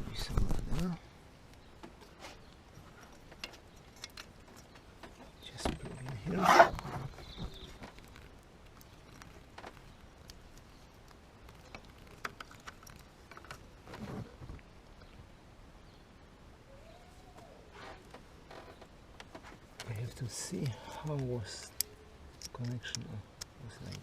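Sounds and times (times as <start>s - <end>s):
light clicks and taps: 18.1s - 24.0s.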